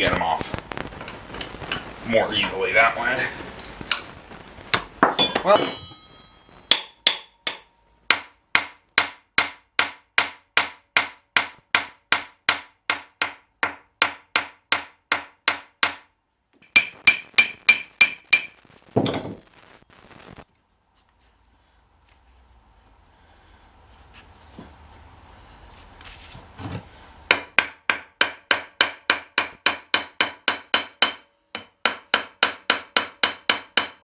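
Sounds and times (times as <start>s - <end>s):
hammer striking metal axle: 5.1s - 19.3s, 27.3s - 34.0s.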